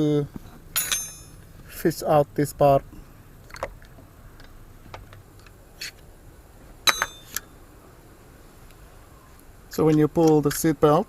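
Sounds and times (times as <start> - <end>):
sharp metallic clink: 0.8 - 1.4, 6.8 - 7.6.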